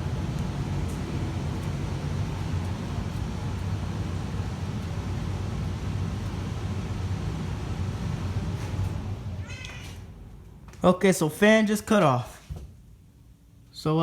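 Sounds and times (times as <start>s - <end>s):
air rushing through ducts: 0.0s - 9.4s
furnace blower fan humming: 0.0s - 14.0s.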